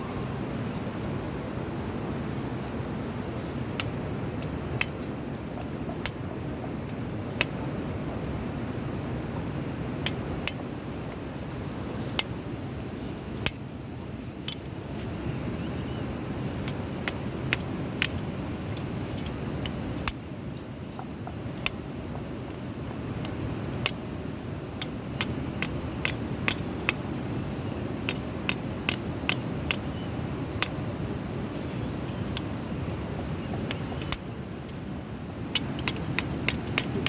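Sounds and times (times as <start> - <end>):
low rumbling noise: 0.0 - 13.4
hoof trimming tools clicking: 16.6 - 20.2, 21.2 - 22.3, 23.1 - 24.2, 24.8 - 27.1, 27.9 - 31.0, 32.1 - 37.0.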